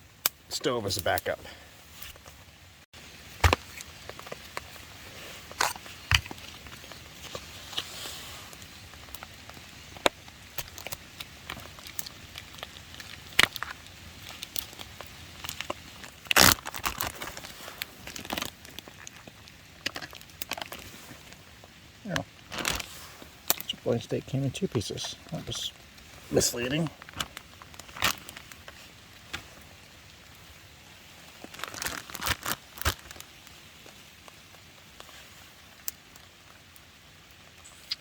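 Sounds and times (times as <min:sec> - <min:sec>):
plastic packaging crinkling: 0:05.4 - 0:21.4, 0:22.1 - 0:23.7, 0:26.4 - 0:29.8, 0:31.2 - 0:34.4.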